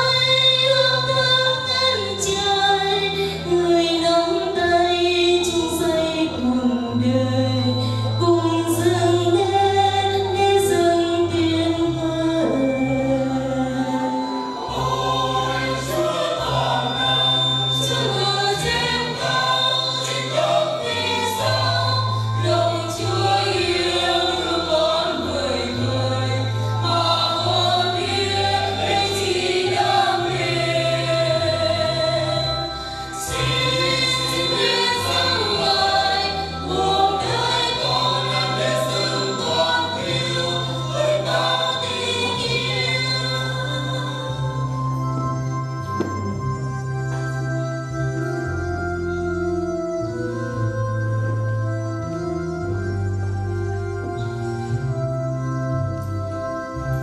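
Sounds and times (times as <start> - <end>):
choir singing a hymn: 0.0 - 44.8
keyboard accompaniment: 0.0 - 57.0.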